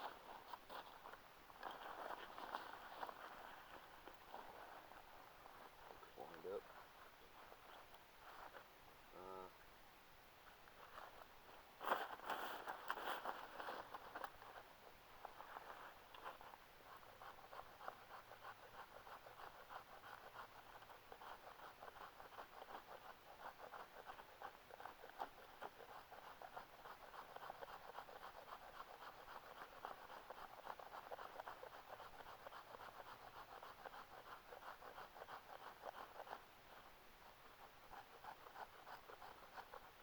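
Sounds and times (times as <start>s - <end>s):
small saw cutting wood: 16.9s - 36.9s, 37.5s - 40.0s.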